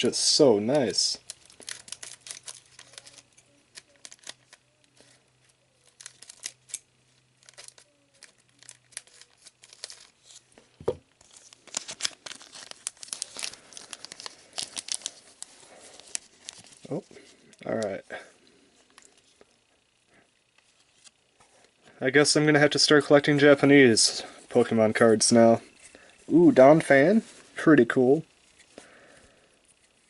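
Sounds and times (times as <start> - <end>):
wrapper crinkling and tearing: 0.7 - 10.6, 11.2 - 17.9.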